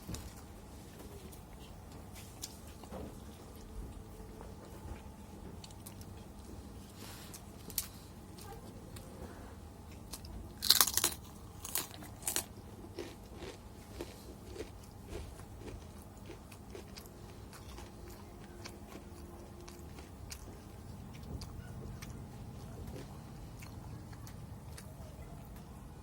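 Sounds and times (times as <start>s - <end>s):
chewing with wet clicks: 4.9s - 6.6s, 9.9s - 25.9s
fried chicken crunching: 9.9s - 25.6s.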